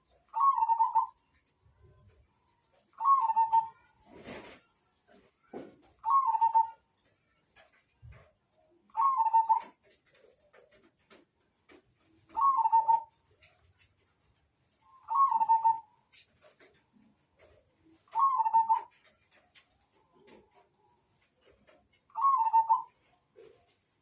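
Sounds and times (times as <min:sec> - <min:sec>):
dove cooing: 0:00.3 - 0:01.3, 0:03.0 - 0:04.6, 0:06.0 - 0:06.8, 0:08.8 - 0:10.8, 0:12.3 - 0:13.6, 0:14.9 - 0:16.8, 0:17.4 - 0:20.8, 0:21.4 - 0:23.8.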